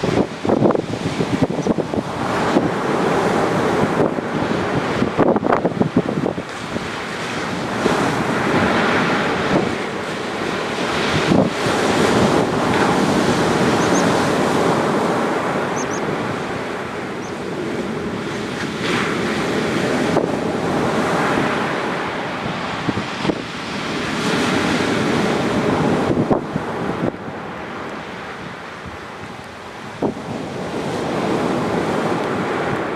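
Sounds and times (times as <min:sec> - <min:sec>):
ocean waves breaking on beach: 0:00.0 - 0:32.9
wind buffeting microphone: 0:00.0 - 0:32.9
faint high bird chirps: 0:13.8 - 0:14.1, 0:15.8 - 0:16.0.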